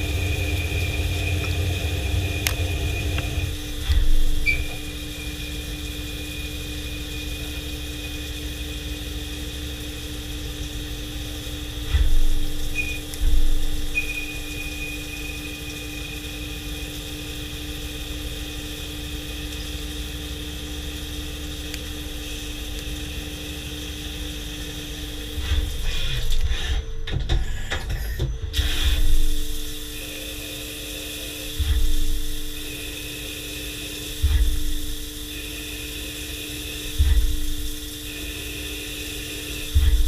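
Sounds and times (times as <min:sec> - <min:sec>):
high steady whine: 0:00.0 - 0:26.7, 0:28.6 - 0:40.0
machine hum: 0:00.0 - 0:40.0.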